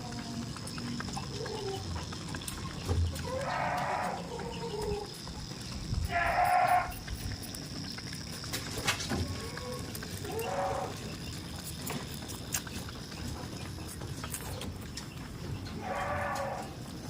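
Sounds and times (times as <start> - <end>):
goat bleating: 3.2 - 4.5, 6.1 - 7.0.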